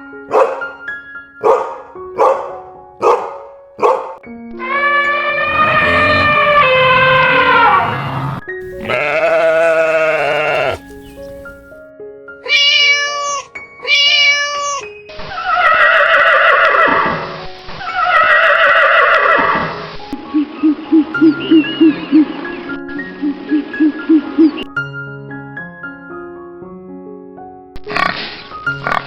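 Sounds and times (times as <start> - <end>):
light background music: 0.0 - 7.4, 8.5 - 15.8, 16.5 - 29.0
farm animal calls: 5.3 - 7.9, 8.6 - 11.7.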